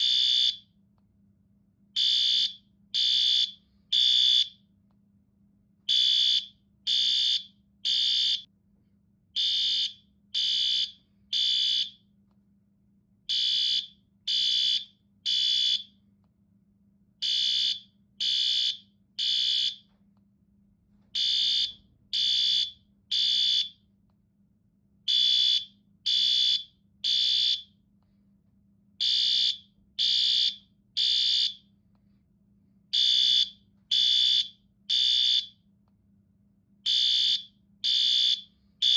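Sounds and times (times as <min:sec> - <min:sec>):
fire alarm beeping: 0:00.0 - 0:00.7, 0:02.0 - 0:04.6, 0:05.9 - 0:08.5, 0:09.4 - 0:12.0, 0:13.3 - 0:16.0, 0:17.2 - 0:19.9, 0:21.2 - 0:23.8, 0:25.1 - 0:27.7, 0:29.0 - 0:31.7, 0:32.9 - 0:35.6, 0:36.8 - 0:38.9.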